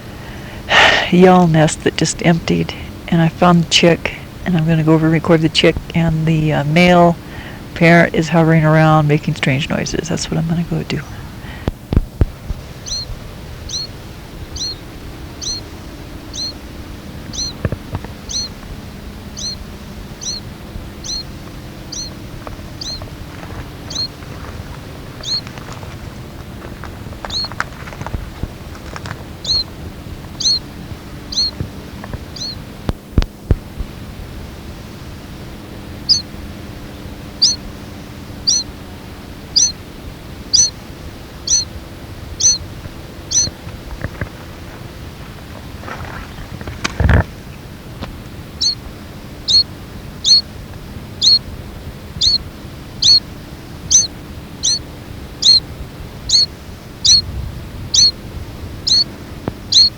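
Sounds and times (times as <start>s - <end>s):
bird high thin call: 12.8s - 13.1s, 15.4s - 15.6s, 16.3s - 16.6s, 17.3s - 17.6s, 18.3s - 18.5s, 19.4s - 19.6s, 20.2s - 20.4s, 21.0s - 21.3s, 21.9s - 22.2s, 22.8s - 23.0s, 23.9s - 24.1s, 25.2s - 25.5s, 29.4s - 29.7s, 30.4s - 30.7s, 31.3s - 31.6s, 32.3s - 32.6s, 37.4s - 37.6s, 38.5s - 38.7s, 39.6s - 39.8s, 40.5s - 40.8s, 41.5s - 41.7s, 42.4s - 42.6s, 43.3s - 43.6s, 48.6s - 48.8s, 49.5s - 50.4s, 51.2s - 51.4s, 52.2s - 52.4s, 53.0s - 53.2s, 53.9s - 54.8s, 55.4s - 55.6s, 56.3s - 57.2s, 57.9s - 58.2s, 58.9s - 59.1s.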